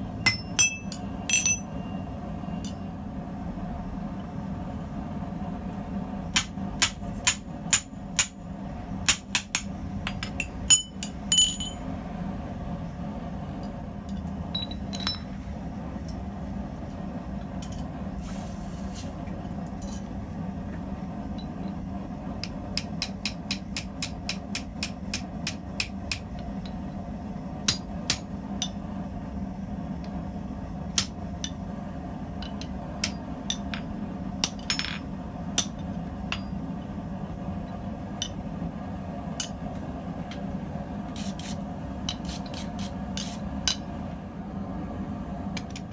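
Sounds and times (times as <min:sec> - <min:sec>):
steady low hum: 0:00.0 - 0:45.9
hammer striking steel on anvil: 0:00.2 - 0:02.9, 0:06.4 - 0:08.4, 0:09.0 - 0:11.9, 0:14.6 - 0:15.6, 0:22.4 - 0:26.4, 0:27.7 - 0:28.8, 0:32.4 - 0:36.6, 0:39.4 - 0:39.6.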